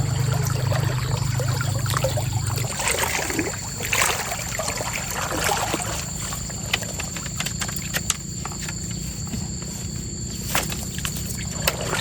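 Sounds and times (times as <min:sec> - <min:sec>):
stream water trickling: 0:00.0 - 0:09.3
low steady rumble: 0:00.0 - 0:12.0.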